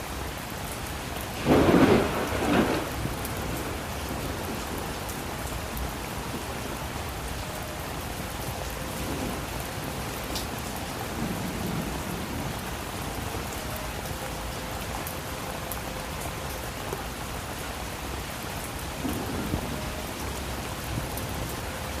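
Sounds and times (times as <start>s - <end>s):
steady rain falling: 0.0s - 22.0s
thunder rumbles: 1.3s - 7.0s, 8.9s - 13.6s, 18.9s - 22.0s.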